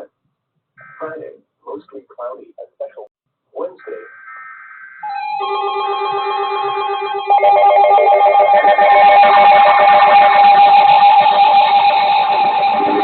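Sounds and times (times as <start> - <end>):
warbling data-burst tones: 3.8 - 5.7, 8.4 - 13.0.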